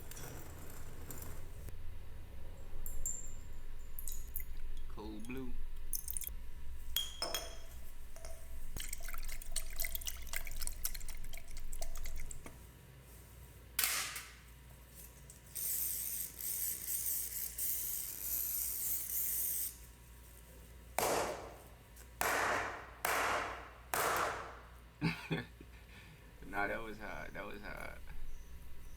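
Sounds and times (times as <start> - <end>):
liquid dripping on metal: 2.8 - 6.4, 7.0 - 12.5.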